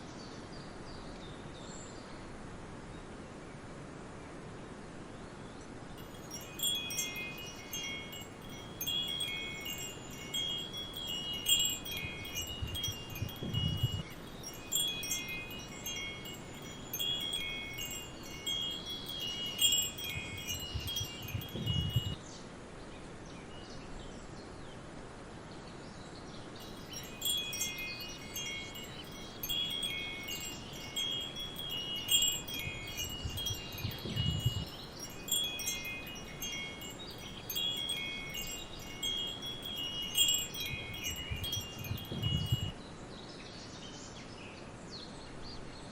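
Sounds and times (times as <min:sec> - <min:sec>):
soft forest ambience hiss: 0:00.0 - 0:45.9
wind chimes ringing: 0:06.0 - 0:22.2, 0:26.6 - 0:42.8.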